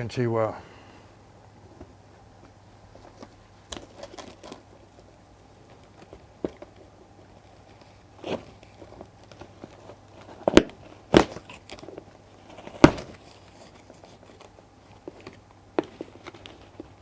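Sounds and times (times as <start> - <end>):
packaging crinkling: 1.8 - 17.0
sharp knocks on packaging: 10.3 - 11.5, 12.6 - 13.2.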